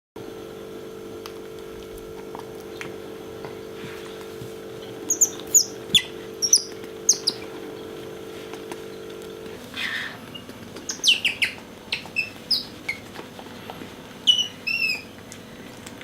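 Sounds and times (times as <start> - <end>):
steady low hum: 0.2 - 16.0
otter squeaking: 4.7 - 15.3.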